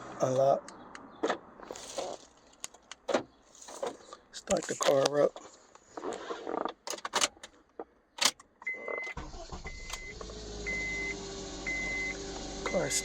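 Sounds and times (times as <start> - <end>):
dashboard warning chime beeping: 8.7 - 13.0
car engine starting and idling: 9.1 - 13.0.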